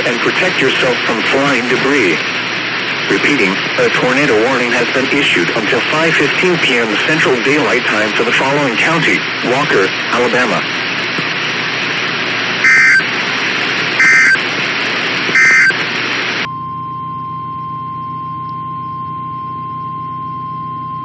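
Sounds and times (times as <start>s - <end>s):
radio static: 0.0s - 16.5s
steady alert tone: 12.6s - 13.0s, 14.0s - 14.4s, 15.4s - 15.8s
screeching digital data bursts: 12.6s - 13.1s, 14.0s - 14.4s, 15.3s - 15.8s.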